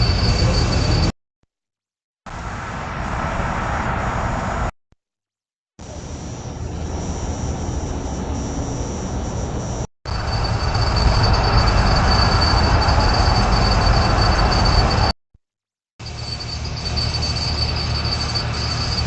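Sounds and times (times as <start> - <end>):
high electronic whine: 0.0 - 1.1, 5.8 - 15.1, 16.0 - 19.0
outdoor background rush: 0.0 - 1.1, 5.8 - 15.1, 16.0 - 19.0.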